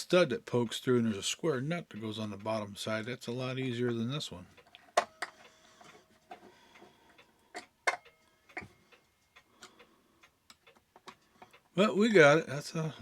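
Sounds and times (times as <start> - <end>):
small metal clicks and taps: 4.6 - 8.8, 10.5 - 11.7.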